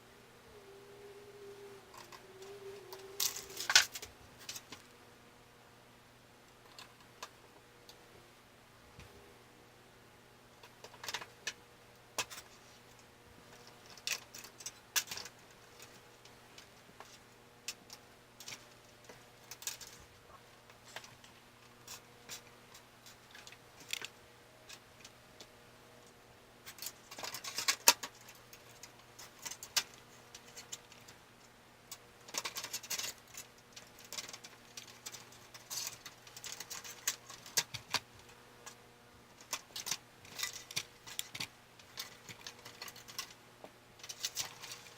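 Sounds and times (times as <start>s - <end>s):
faint steady hum: 0.0s - 44.9s
computer parts clicking and rustling: 1.9s - 4.8s, 6.6s - 8.0s, 10.6s - 11.6s, 12.2s - 20.1s, 20.7s - 25.1s, 26.6s - 43.4s, 44.0s - 44.9s.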